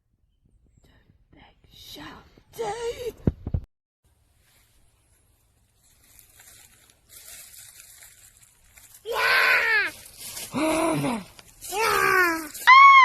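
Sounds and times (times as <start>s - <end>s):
high scream falling in pitch: 12.6s - 13.0s.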